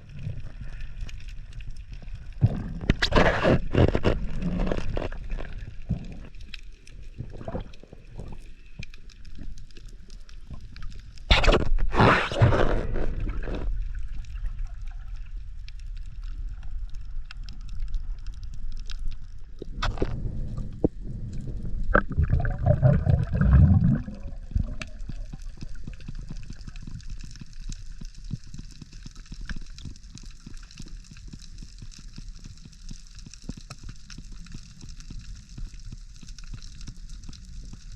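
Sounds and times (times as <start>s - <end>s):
water sloshing and gurgling: 0.0s - 16.3s, 18.2s - 29.0s.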